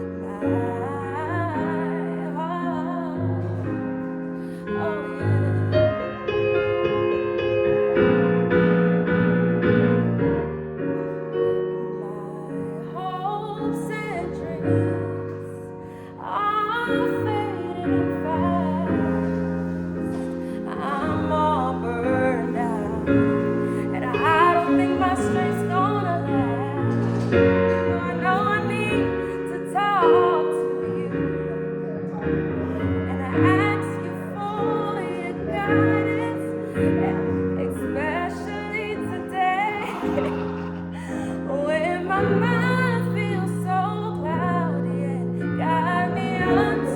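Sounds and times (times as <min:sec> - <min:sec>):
person singing: 0:00.0 - 0:06.4, 0:11.9 - 0:46.9
piano chords: 0:00.0 - 0:46.9
singing voice with vibrato: 0:32.6 - 0:46.9.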